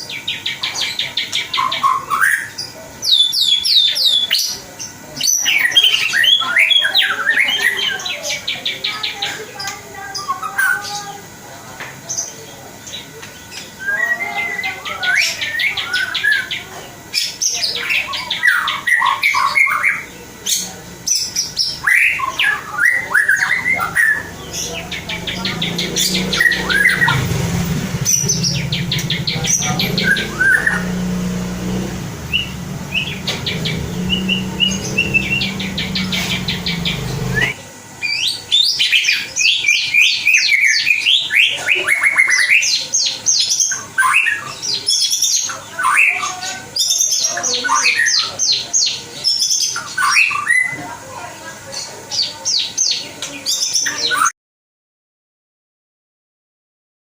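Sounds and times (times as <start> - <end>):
bird singing trills and whistles: 0.0 - 4.6, 13.6 - 50.8
low steady hum: 23.3 - 37.6.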